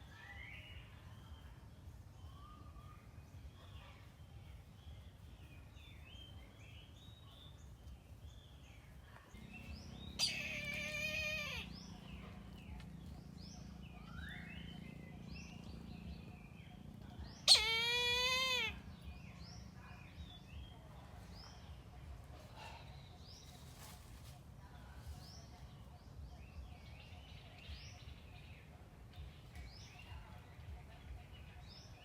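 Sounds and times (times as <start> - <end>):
small birds chirping faintly: 0.0 - 32.0
kite drawn-out cries: 10.2 - 11.7, 17.5 - 18.8.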